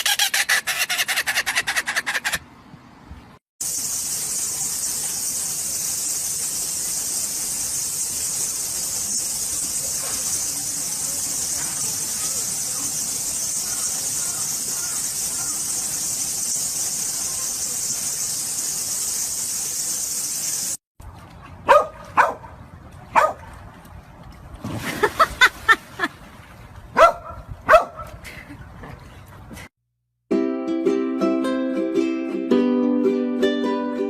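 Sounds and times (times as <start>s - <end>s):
high-pitched hiss: 3.6s - 20.8s
small dog yipping and barking: 27.0s - 28.0s.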